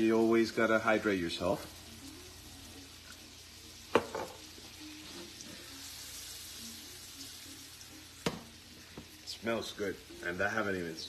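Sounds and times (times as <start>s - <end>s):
chicken sizzling in a skillet: 0.0s - 11.0s.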